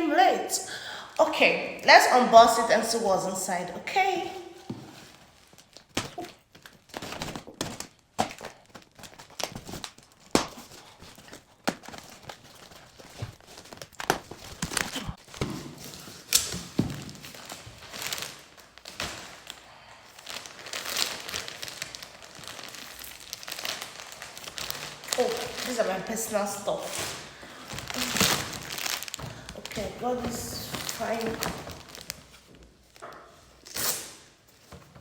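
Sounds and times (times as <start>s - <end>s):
packaging crinkling and rustling: 4.5s - 35.0s
items thunking: 26.3s - 33.5s.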